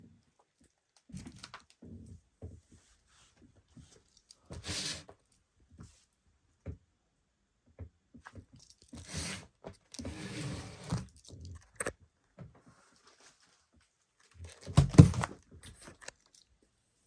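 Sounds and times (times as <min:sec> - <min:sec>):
crunching and rustling: 0:12.8 - 0:16.5.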